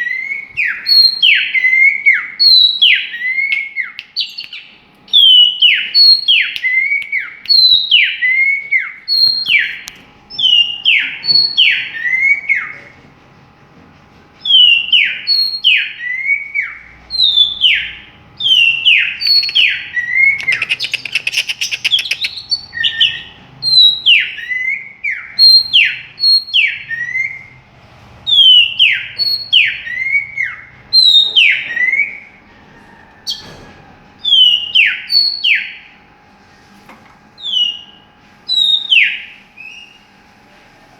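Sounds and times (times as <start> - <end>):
songbird whistling: 0.0 - 12.8, 14.4 - 27.6, 28.3 - 33.6, 34.2 - 35.9, 37.4 - 40.1
bird buzzy rattle: 20.3 - 22.6.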